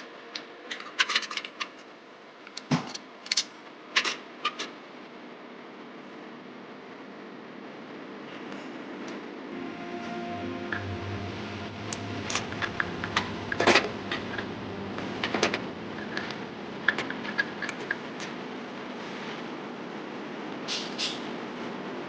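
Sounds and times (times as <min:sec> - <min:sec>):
steady low hum: 0:09.5 - 0:20.4.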